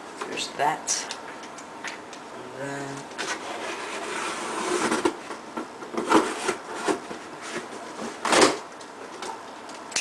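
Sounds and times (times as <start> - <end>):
cardboard rustling and scraping: 3.2 - 8.6.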